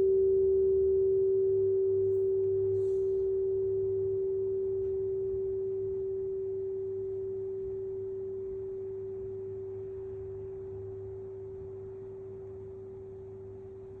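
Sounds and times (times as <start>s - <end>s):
pure tone ringing: 0.0s - 14.0s.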